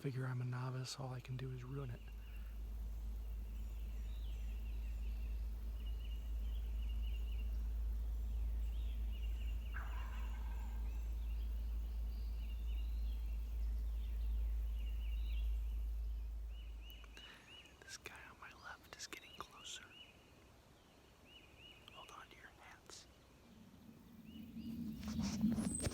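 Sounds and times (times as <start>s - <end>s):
low rumble: 0.0s - 17.4s, 23.4s - 25.9s
small birds trilling: 0.0s - 25.9s.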